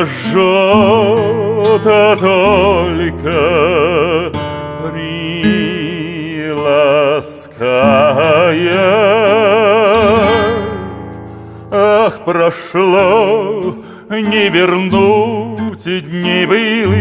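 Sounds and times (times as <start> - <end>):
man singing with vibrato: 0.0 - 17.0.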